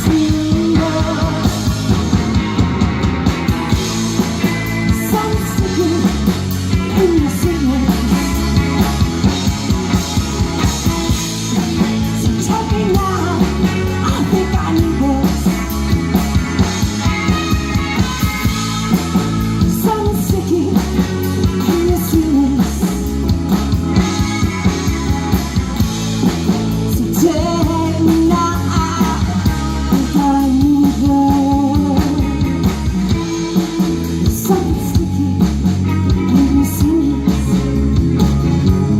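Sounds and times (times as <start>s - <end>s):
person singing: 0.0s - 2.0s, 4.0s - 9.0s, 11.5s - 15.8s, 17.3s - 23.2s, 26.8s - 38.0s
rock band playing live: 0.0s - 38.9s
steady drum beat: 0.0s - 38.9s.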